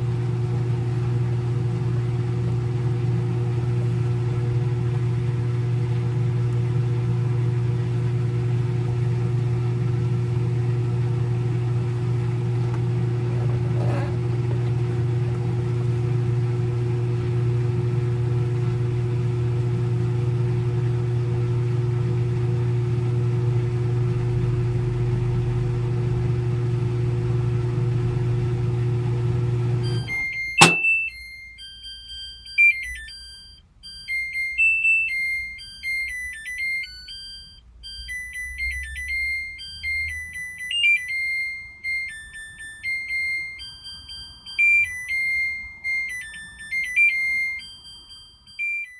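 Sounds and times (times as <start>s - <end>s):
washing machine spin hum: 0.0s - 48.9s
electronic beeping tune: 29.9s - 48.9s.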